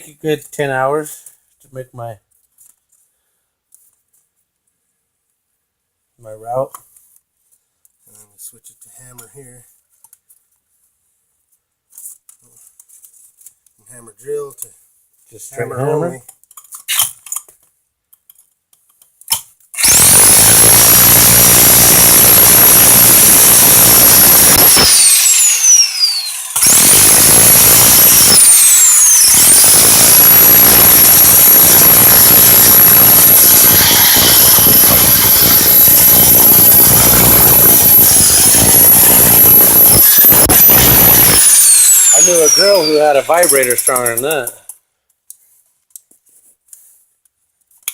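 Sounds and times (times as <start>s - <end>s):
rotary hammer hammering concrete: 42.2s - 44.7s.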